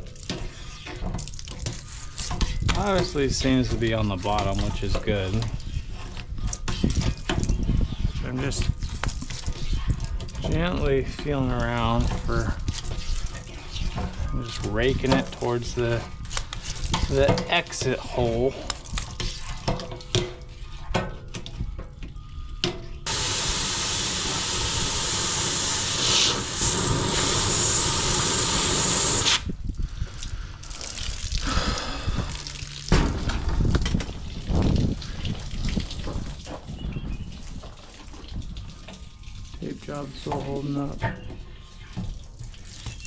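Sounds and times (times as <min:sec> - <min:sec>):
water rushing out: 0:23.1 - 0:29.5.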